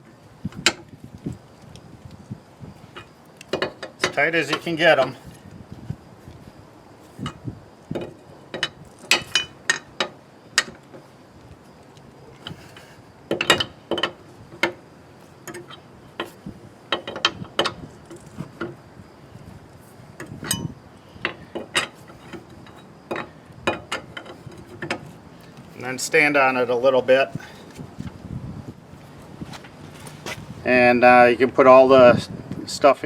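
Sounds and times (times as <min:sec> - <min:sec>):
lug wrench clicking on metal: 0:20.2 - 0:25.1.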